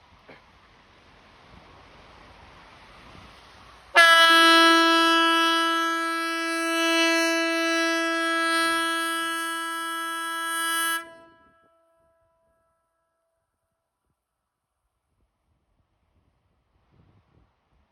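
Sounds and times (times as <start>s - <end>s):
warning siren steady tone: 4.0s - 11.7s.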